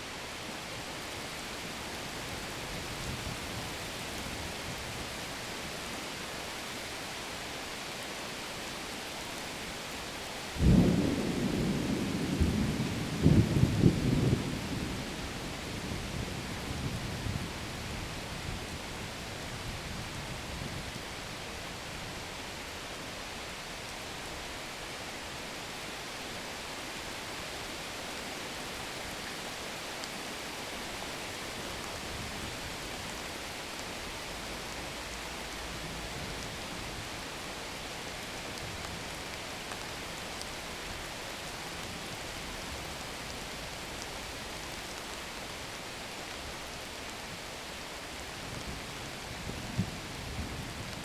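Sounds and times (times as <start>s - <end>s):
thunder rumbling: 10.6s - 15.1s.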